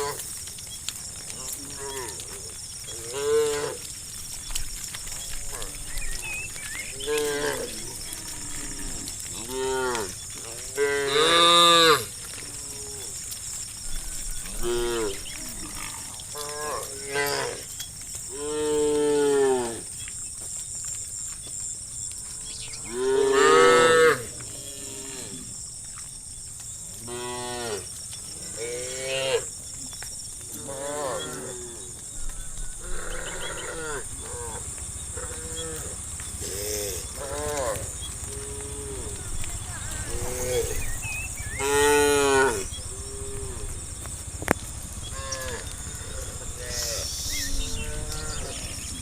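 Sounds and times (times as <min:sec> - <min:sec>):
cows mooing: 0:01.3 - 0:03.9, 0:05.2 - 0:13.3, 0:14.1 - 0:19.9, 0:22.3 - 0:25.4, 0:30.5 - 0:32.0, 0:32.8 - 0:43.8, 0:45.0 - 0:49.0
steady high hiss: 0:39.2 - 0:49.0.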